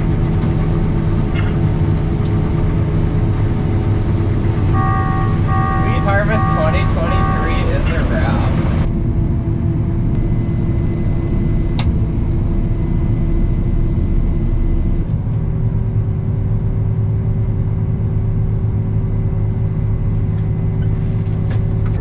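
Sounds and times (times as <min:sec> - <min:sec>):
combine harvester engine drone: 0:00.0 - 0:22.0.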